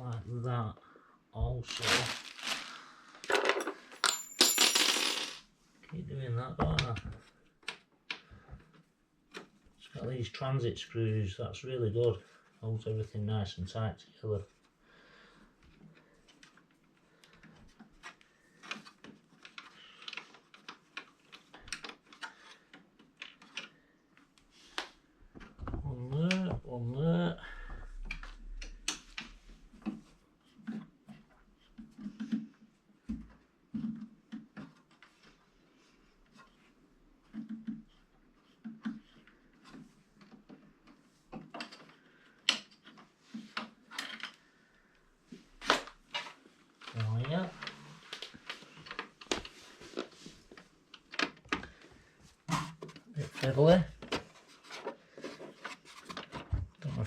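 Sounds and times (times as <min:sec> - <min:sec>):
clicks and knocks of hand work: 0:15.6 - 0:26.6, 0:27.7 - 0:35.5, 0:36.1 - 0:44.4.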